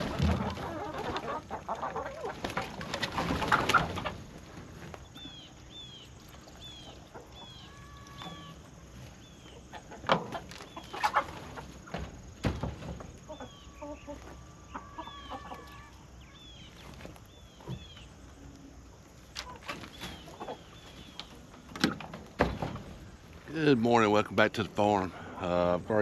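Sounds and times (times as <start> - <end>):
chickens clucking: 0.0 - 26.0
small bird chirping: 5.0 - 9.9, 13.2 - 18.5.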